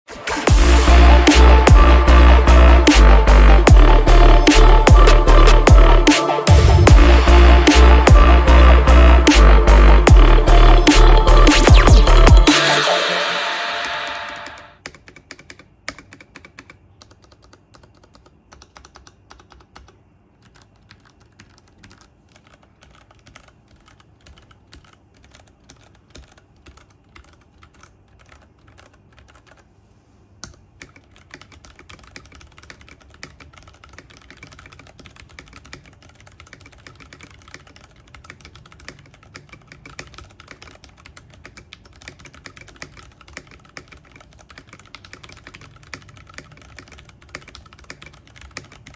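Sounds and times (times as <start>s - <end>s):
mechanical keyboard typing: 13.8s - 29.7s, 30.4s - 48.9s.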